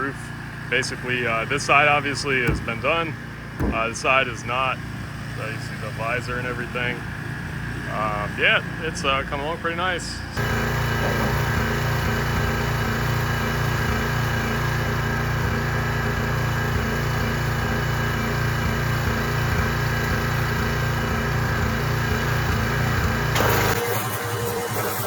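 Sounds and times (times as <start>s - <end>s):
pressure washer engine running: 10.4s - 25.0s.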